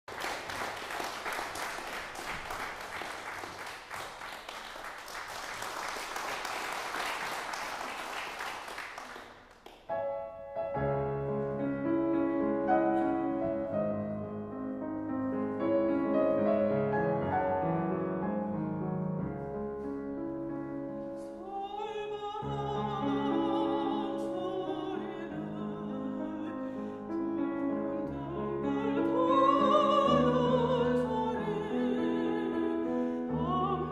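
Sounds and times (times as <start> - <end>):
audience applauding: 0.0 - 9.9
solo piano playing: 9.9 - 21.2.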